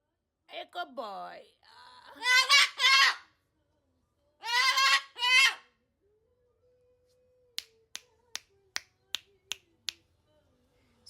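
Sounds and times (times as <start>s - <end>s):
parrot call: 2.2s - 3.3s, 4.4s - 5.7s.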